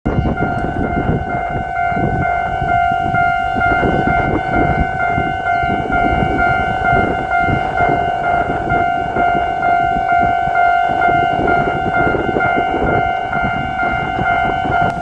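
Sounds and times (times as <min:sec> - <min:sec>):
level crossing alarm ringing: 0:00.0 - 0:15.0.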